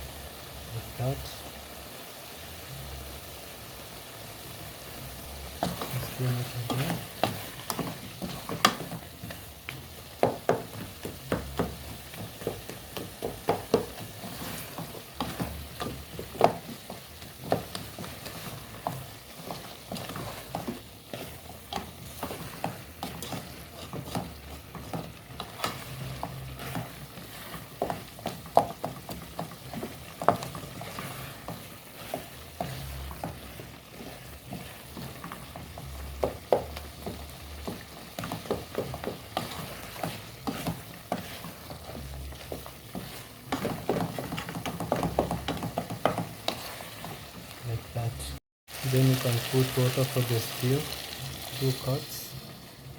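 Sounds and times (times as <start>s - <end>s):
sizzle of frying in oil: 0.0s - 52.9s
spoon clinking and scraping pot: 5.6s - 47.4s.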